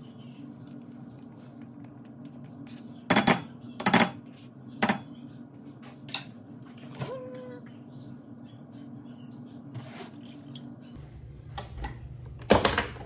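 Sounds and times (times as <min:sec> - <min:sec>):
steady low hum: 0:10.7 - 0:13.0.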